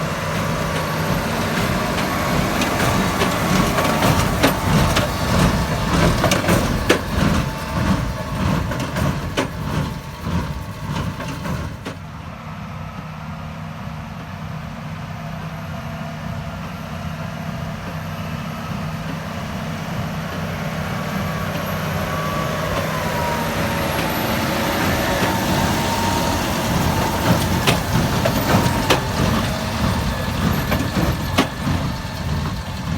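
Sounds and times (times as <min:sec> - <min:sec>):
vehicle engine running: 0:00.0 - 0:12.2, 0:18.8 - 0:32.9
knocks and rattles: 0:00.4 - 0:12.0, 0:24.8 - 0:32.9.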